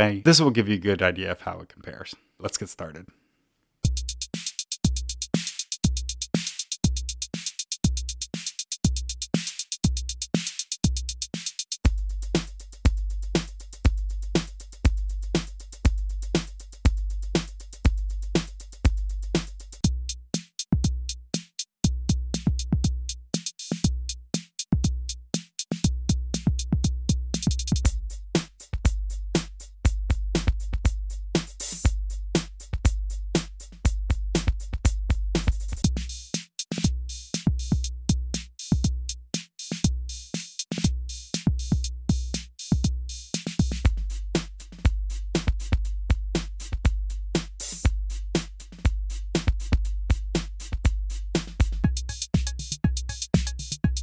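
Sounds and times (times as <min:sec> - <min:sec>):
drum machine beat: 0:03.8 - 0:54.0.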